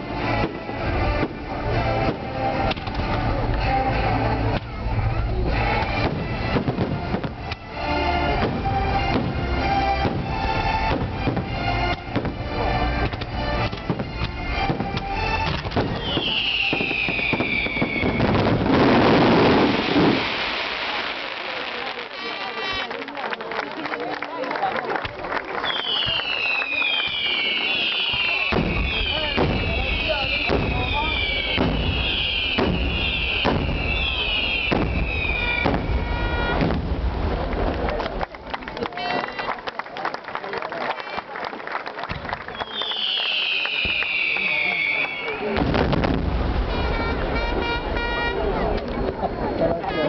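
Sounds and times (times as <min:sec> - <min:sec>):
firework cracks: 0:13.0 - 0:24.2, 0:25.0 - 0:39.6, 0:42.0 - 0:48.2
falling firework whistle: 0:15.8 - 0:22.9, 0:25.6 - 0:36.9, 0:42.1 - 0:50.0.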